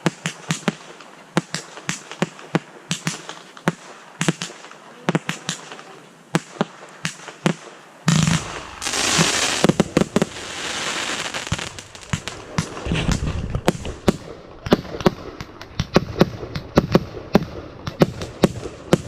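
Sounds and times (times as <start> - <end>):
fireworks bangs: 0.0 - 19.0
deep firework boom: 8.1 - 19.0
firework crackling hiss: 8.1 - 19.0.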